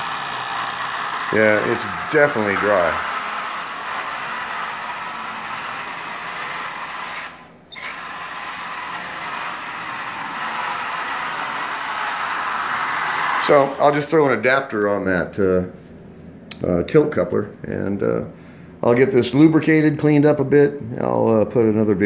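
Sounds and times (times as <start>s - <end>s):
toy train motor whirring: 0.0s - 14.1s.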